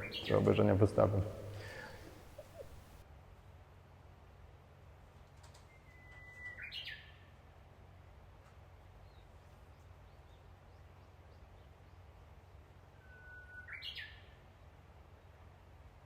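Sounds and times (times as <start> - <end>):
bird whistling call: 0.0 - 0.7
faint bird chirps: 0.0 - 3.0
low steady hum: 0.0 - 3.0.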